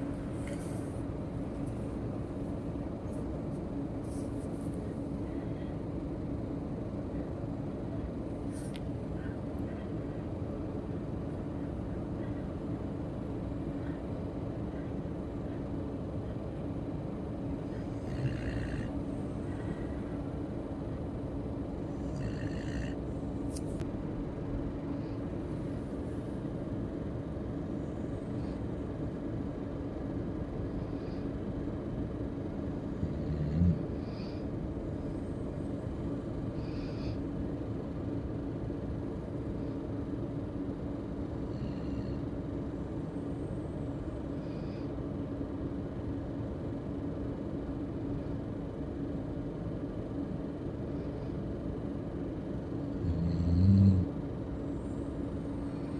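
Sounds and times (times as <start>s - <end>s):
steady low hum: 0.0s - 55.9s
pet snoring: 0.2s - 1.0s, 17.6s - 20.3s, 21.8s - 23.8s, 32.8s - 37.2s, 41.4s - 42.4s, 52.9s - 55.9s.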